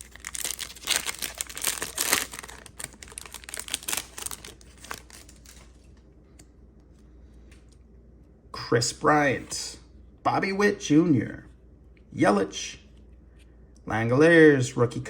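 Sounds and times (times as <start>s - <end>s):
card pack wrapper tearing and crinkling: 0.0s - 5.9s.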